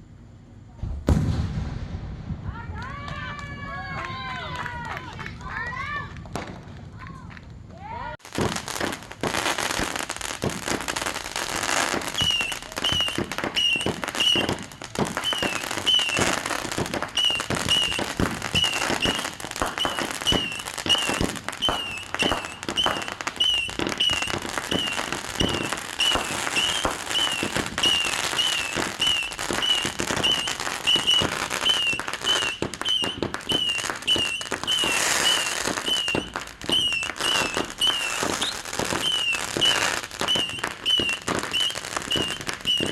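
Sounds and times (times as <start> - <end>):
fireworks bangs and crackling: 0.7 - 42.9
high falling chirp: 15.2 - 42.9.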